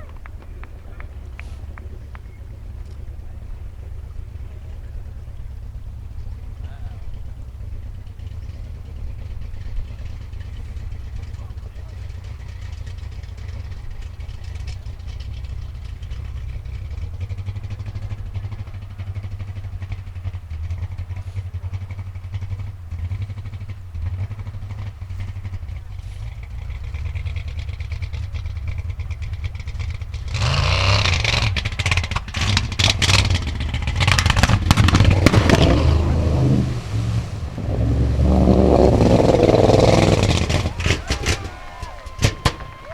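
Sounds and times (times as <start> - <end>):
jeep engine running: 0.0 - 42.9.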